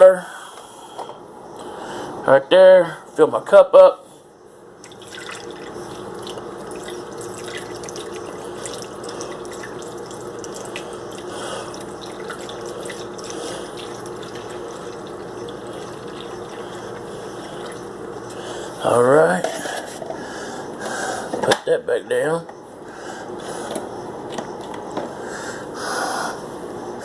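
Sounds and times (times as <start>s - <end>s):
tap water filling a cup: 4.8s - 18.4s.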